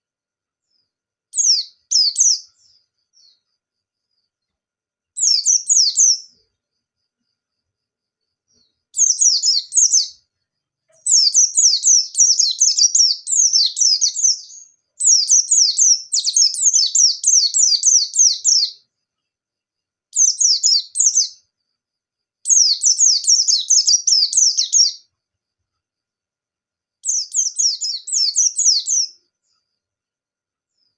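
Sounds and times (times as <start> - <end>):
bird chirping rapidly: 1.4 - 3.3, 5.2 - 6.3, 9.0 - 10.2, 11.0 - 18.8, 20.2 - 21.4, 22.5 - 25.0, 27.0 - 29.2.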